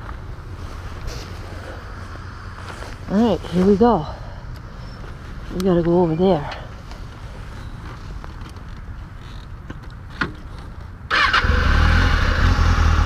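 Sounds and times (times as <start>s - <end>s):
motorcycle engine starting and idling: 9.2s - 13.0s.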